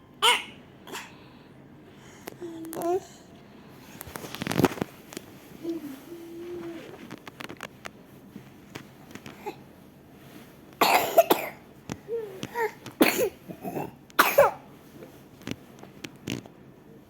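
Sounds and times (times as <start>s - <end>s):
child coughing: 0.2s - 1.2s, 10.8s - 11.6s, 12.5s - 14.7s.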